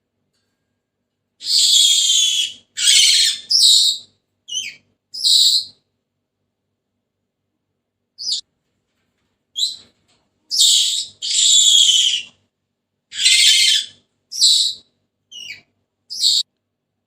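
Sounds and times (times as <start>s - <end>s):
parrot calling: 1.4s - 5.7s, 10.5s - 12.3s, 13.1s - 16.4s.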